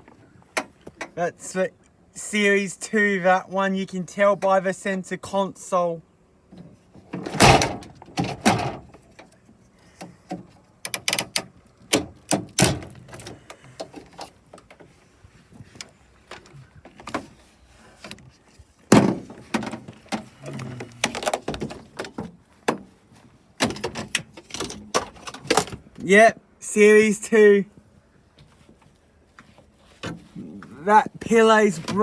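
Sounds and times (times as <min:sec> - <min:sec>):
car body clunks and knocks: 0:07.0 - 0:09.0, 0:18.9 - 0:20.3.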